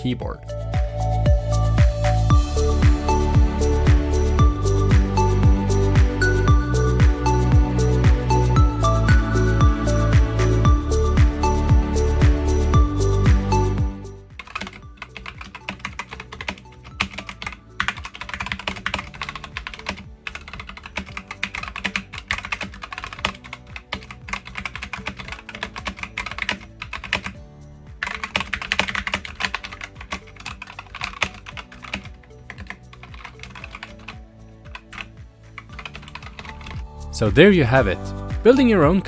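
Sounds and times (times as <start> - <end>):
mechanical keyboard typing: 14.4 - 27.4, 28.0 - 36.7.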